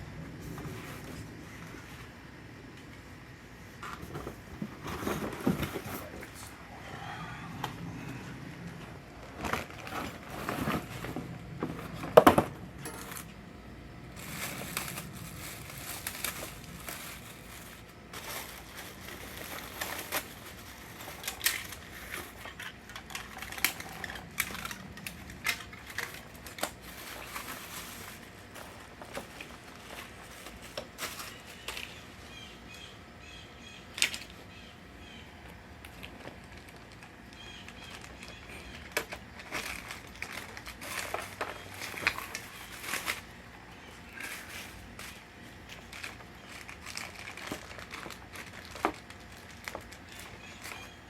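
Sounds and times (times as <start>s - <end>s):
packaging rustling: 7.4s - 13.4s, 14.0s - 32.2s, 35.9s - 51.0s.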